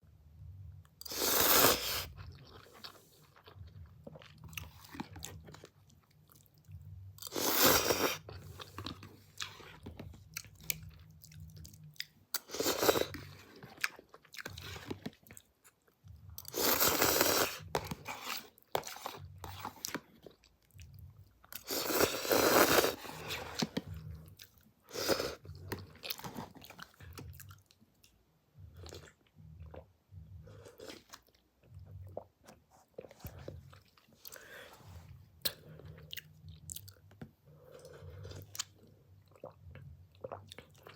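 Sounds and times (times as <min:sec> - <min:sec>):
chewing: 0:01.9 - 0:28.1.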